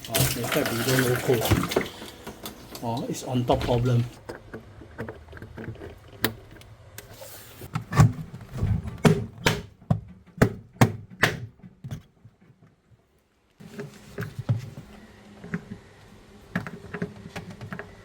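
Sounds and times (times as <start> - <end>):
irregular sharp knocks and clicks: 9.0 - 11.8.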